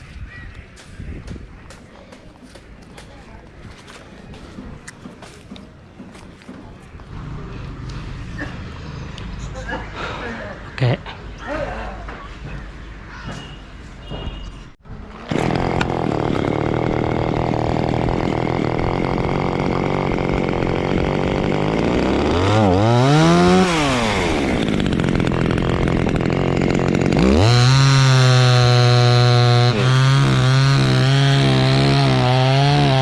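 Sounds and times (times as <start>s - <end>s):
chainsaw idling and revving: 15.2s - 33.0s.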